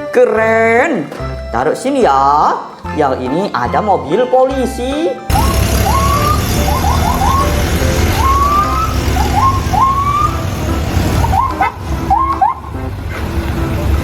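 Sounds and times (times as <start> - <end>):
toy siren whoops: 5.3 - 12.8
toy engine rumbling: 5.3 - 14.0.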